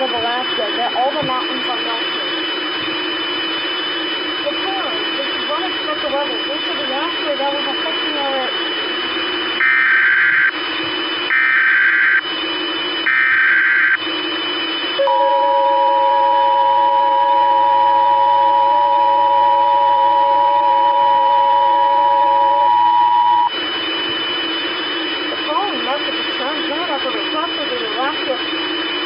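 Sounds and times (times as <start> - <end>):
radio static hiss: 0.0 - 15.1, 20.3 - 29.0
screechy data tone bursts: 9.3 - 12.2, 13.0 - 14.0, 15.9 - 24.8
two-tone attention signal: 15.0 - 23.5.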